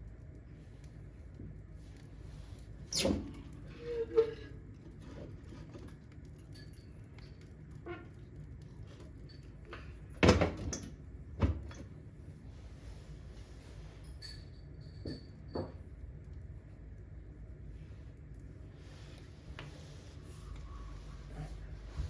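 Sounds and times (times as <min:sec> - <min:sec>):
brief squeak: 0:02.9 - 0:04.5.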